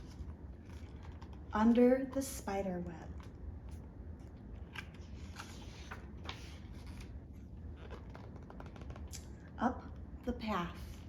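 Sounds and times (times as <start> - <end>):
book pages turning: 0.0 - 2.5, 3.1 - 9.4.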